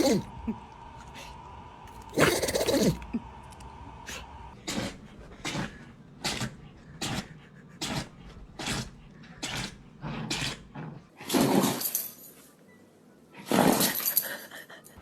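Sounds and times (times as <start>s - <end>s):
dog sneezing: 2.1s - 3.2s.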